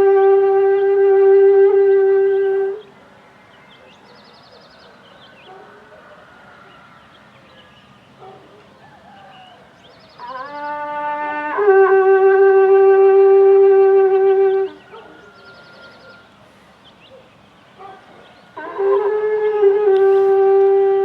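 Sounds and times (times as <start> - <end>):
horn blowing held note: 0.0 - 2.8, 10.4 - 16.2, 18.6 - 21.0.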